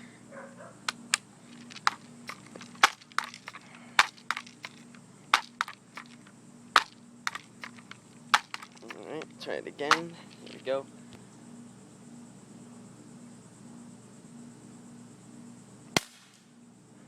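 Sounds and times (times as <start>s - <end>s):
sharp clicks and crunches: 0.9s - 10.8s.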